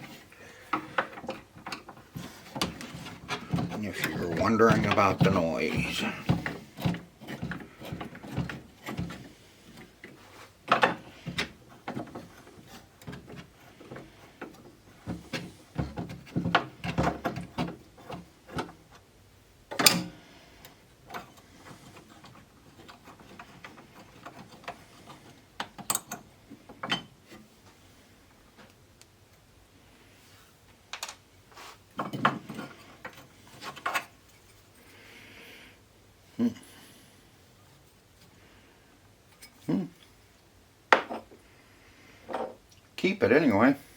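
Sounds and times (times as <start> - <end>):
tools clicking and clattering: 19.7 - 27.1.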